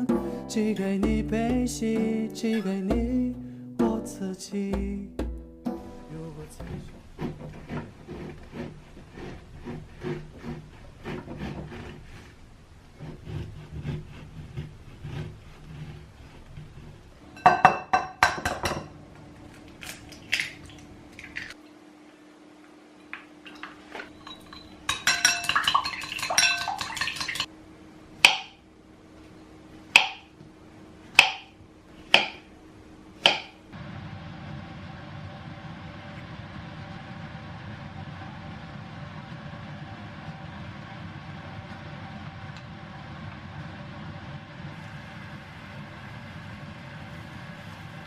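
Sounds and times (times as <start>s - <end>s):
steady low hum: 0.0s - 48.0s
utensils clattering against dishes: 23.5s - 27.5s.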